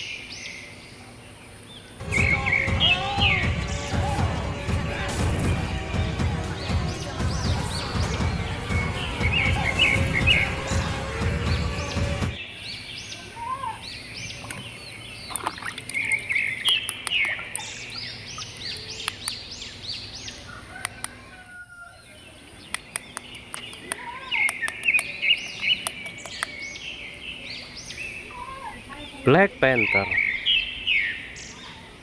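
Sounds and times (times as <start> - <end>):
birds chirping: 0.0 - 32.0
music: 2.0 - 12.4.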